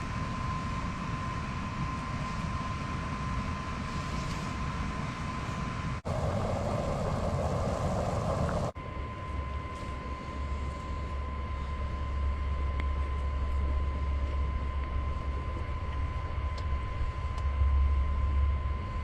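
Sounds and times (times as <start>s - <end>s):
blower fan whirring: 0.9s - 8.8s.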